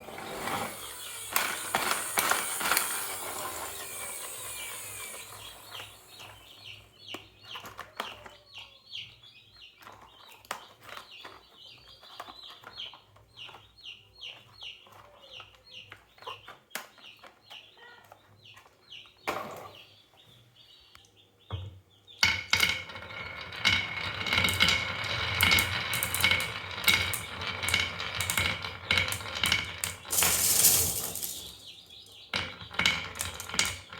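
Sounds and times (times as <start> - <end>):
marbles clacking down wooden run: 0.4 - 6.4, 22.3 - 33.9.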